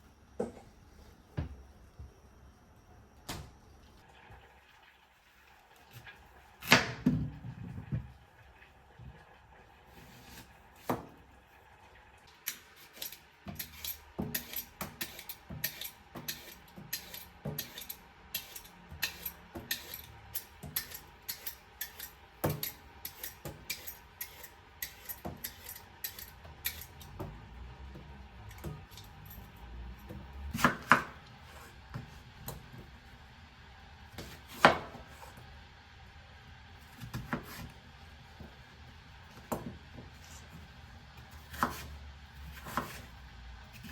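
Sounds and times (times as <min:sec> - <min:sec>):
knife chopping on cutting board: 0:13.0 - 0:27.4, 0:30.0 - 0:32.6, 0:34.2 - 0:35.4, 0:36.9 - 0:37.7, 0:41.4 - 0:43.1.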